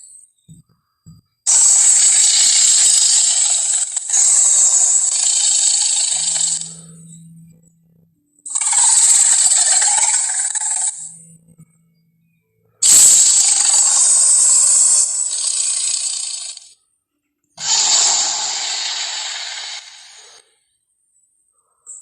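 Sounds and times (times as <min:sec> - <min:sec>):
harsh hissy monster roars: 0:01.5 - 0:06.8, 0:12.8 - 0:16.7, 0:17.6 - 0:20.4.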